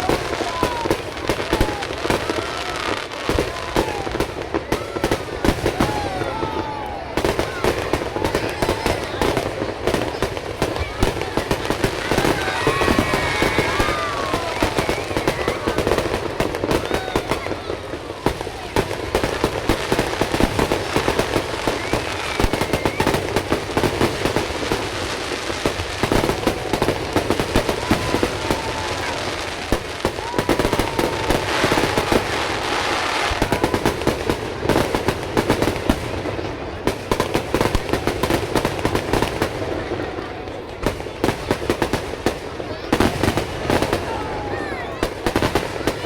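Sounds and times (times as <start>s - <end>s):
fireworks bangs and crackling: 0.0s - 46.0s.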